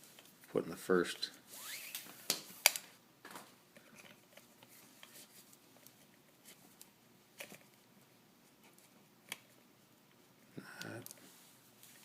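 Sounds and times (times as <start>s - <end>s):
cord rustling and ticking: 3.7s - 10.2s.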